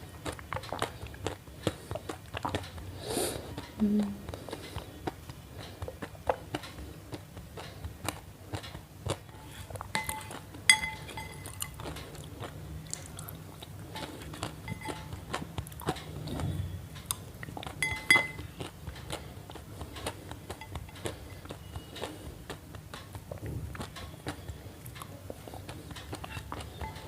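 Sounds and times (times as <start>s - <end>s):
close-up crunching and clicks: 0.0s - 27.0s
dish ringing clinks: 10.0s - 11.7s, 17.8s - 18.4s.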